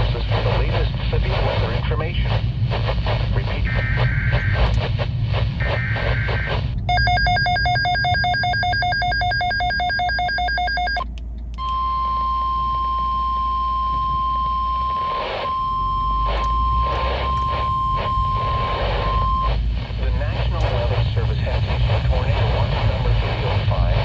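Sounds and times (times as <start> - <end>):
low electrical hum: 0.0 - 24.0
rapid buzzy electronic beeping: 5.6 - 11.0
steady warning alarm tone: 6.9 - 19.5.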